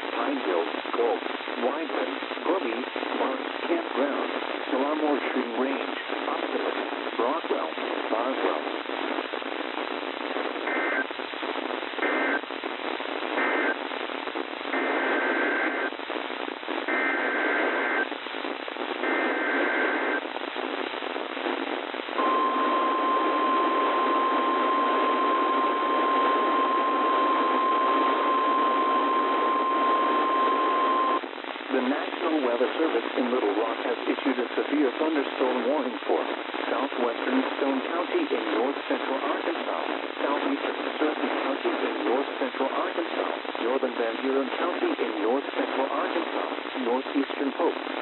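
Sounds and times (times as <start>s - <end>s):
static hiss: 0.0s - 48.0s
steady warning alarm tone: 22.2s - 31.2s
warbling data bursts: 22.2s - 31.2s.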